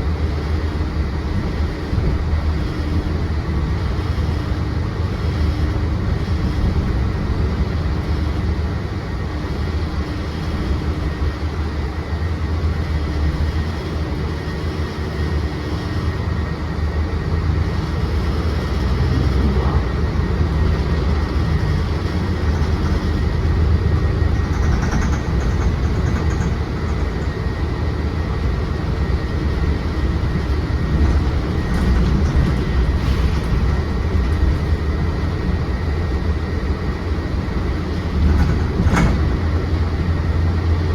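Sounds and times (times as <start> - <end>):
bus engine rumble: 0.0 - 40.9
road noise: 13.5 - 40.9.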